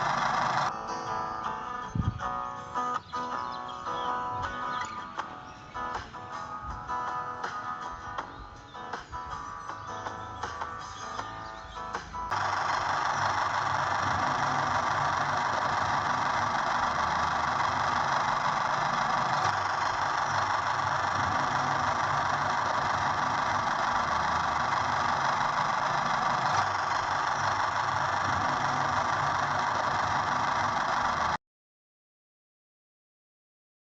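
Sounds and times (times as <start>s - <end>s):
tractor engine idling: 0.0s - 0.7s, 9.4s - 31.4s.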